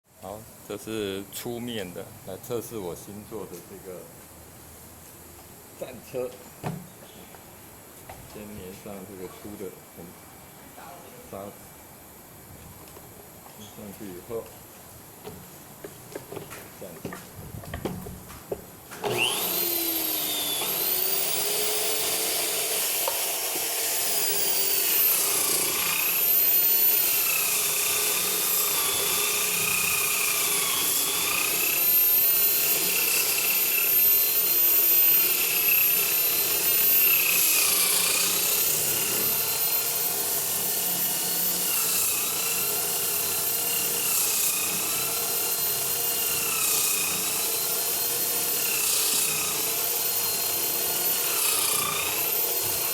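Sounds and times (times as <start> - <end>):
drill motor whine: 19.0 - 52.9.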